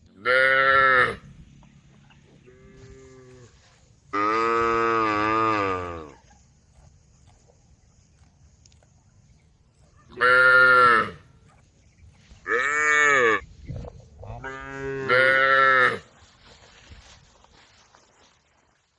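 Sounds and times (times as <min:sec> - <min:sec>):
cows mooing: 0:00.2 - 0:01.3, 0:02.4 - 0:06.2, 0:10.2 - 0:11.2, 0:12.5 - 0:13.4, 0:14.3 - 0:16.0.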